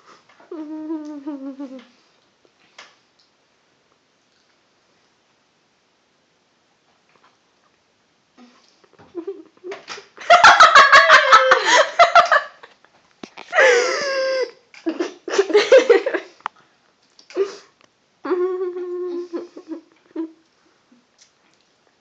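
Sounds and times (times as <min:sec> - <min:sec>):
loud laughter: 0:10.2 - 0:12.7.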